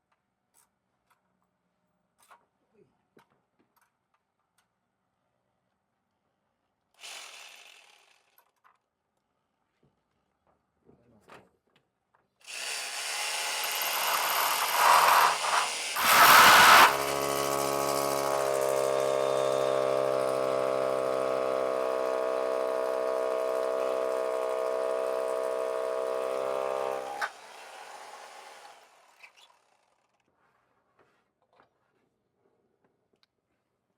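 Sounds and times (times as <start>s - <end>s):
electric power tool running: 12.5s - 29.4s.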